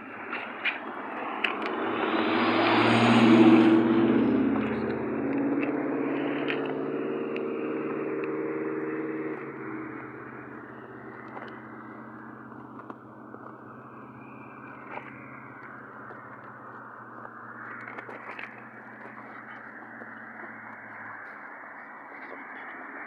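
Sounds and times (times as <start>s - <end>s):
diesel locomotive engine drone: 0.0s - 23.0s
faint clicks: 14.4s - 22.7s.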